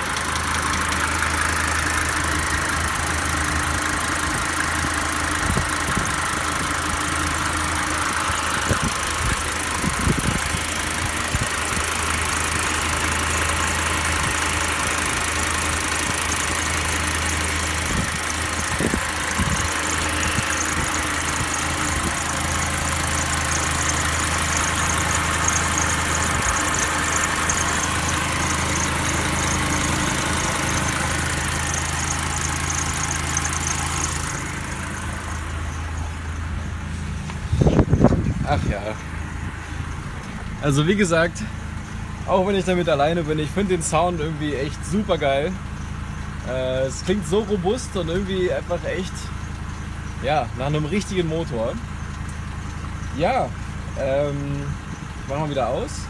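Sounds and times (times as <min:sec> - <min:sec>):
diesel engine idling: 0:00.0 - 0:56.0.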